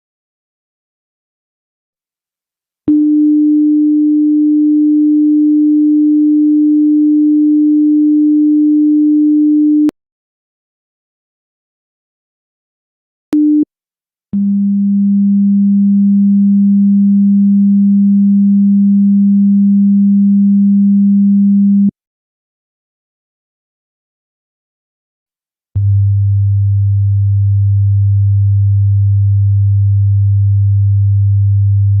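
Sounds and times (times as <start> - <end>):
low-pitched sine tone: 2.9 - 9.9, 14.4 - 21.9, 25.8 - 32.0.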